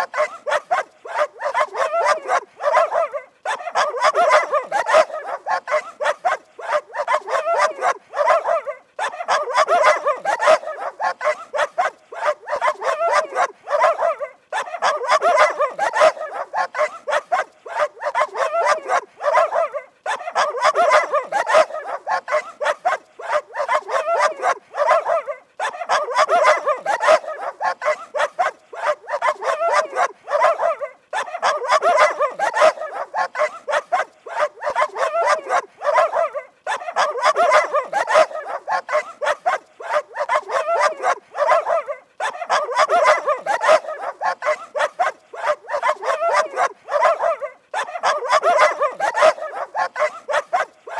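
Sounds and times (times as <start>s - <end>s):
dogs barking angrily: 0.0s - 50.9s.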